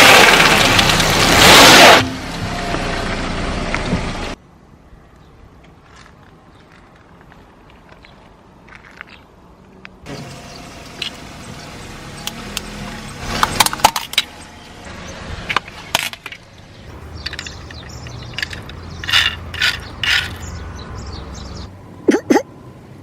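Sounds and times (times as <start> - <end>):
tyre crushing brittle objects: 0.0 - 2.1, 15.6 - 20.6
low car rumble: 9.9 - 23.0.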